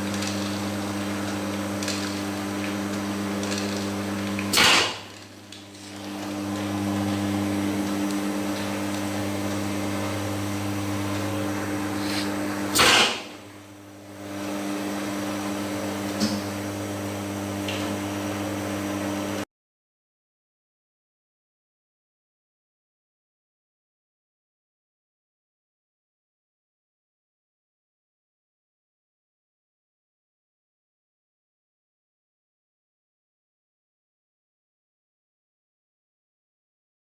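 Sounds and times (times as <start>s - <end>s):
machine electric hum: 0.0s - 19.5s
loud short noisy bursts: 4.5s - 5.2s, 11.9s - 13.5s.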